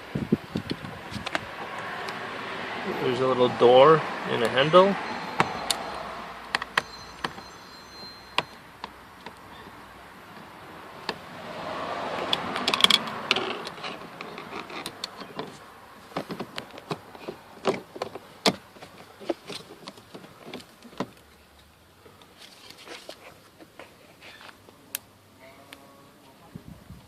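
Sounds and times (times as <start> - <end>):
sharp clicks and knocks: 6.5 - 7.4.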